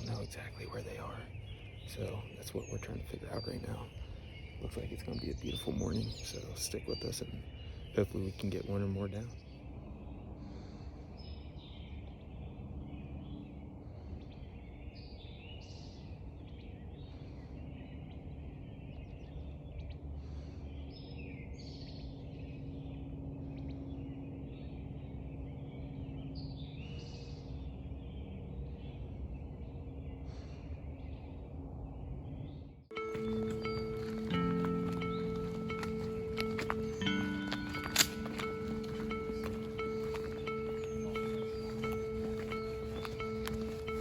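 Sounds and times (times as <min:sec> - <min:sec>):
songbirds chirping: 0:00.0 - 0:44.0
faint hum: 0:15.9 - 0:44.0
steady low rumble: 0:16.1 - 0:44.0.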